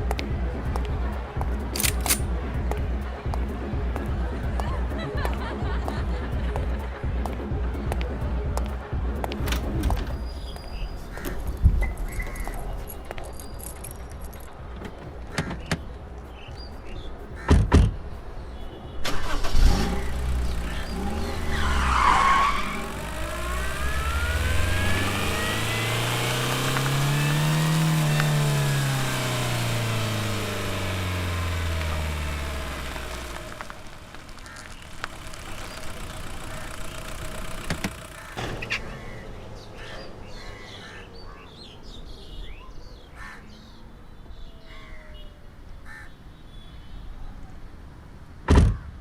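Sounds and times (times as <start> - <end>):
car engine revving: 19.0 - 41.8.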